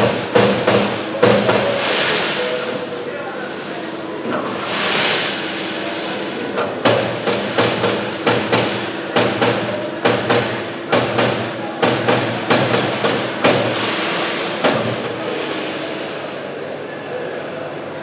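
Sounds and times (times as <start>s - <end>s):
punch press striking sheet metal: 0.0s - 2.7s, 6.5s - 15.5s
machine hum: 0.0s - 18.0s.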